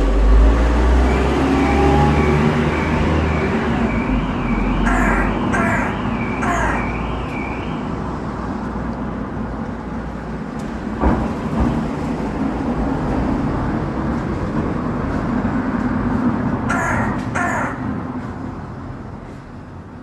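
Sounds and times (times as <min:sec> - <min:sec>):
magpie call: 0:04.8 - 0:07.0, 0:16.7 - 0:18.0.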